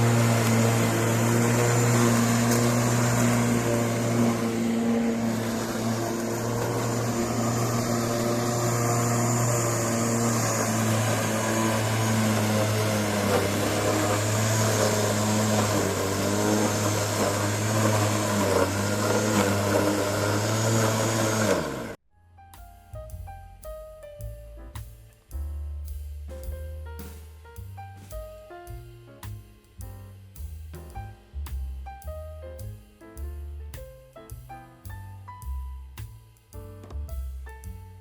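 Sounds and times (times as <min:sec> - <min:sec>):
electric garden tool motor running: 0:00.0 - 0:22.0.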